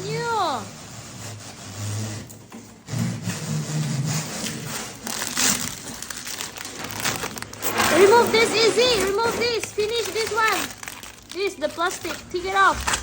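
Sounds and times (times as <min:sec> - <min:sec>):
packaging rubbing and rustling: 0:02.8 - 0:13.0.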